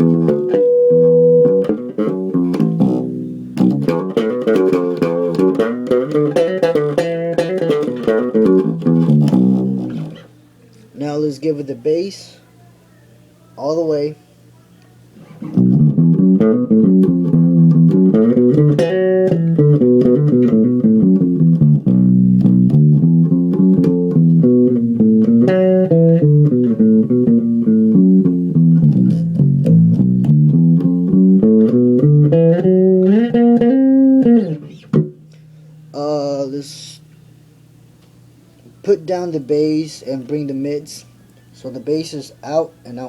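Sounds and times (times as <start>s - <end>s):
electric bass plucked notes: 0.0s - 10.3s, 15.4s - 37.9s.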